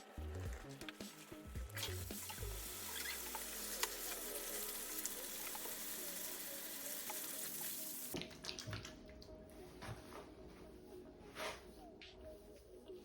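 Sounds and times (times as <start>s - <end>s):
water running from shower head: 1.6s - 8.2s.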